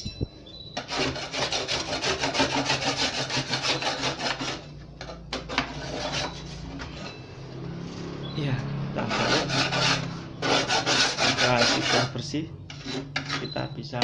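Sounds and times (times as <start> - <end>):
scrub brush scraping wood: 0.8 - 4.6, 5.4 - 7.1, 9.0 - 12.1.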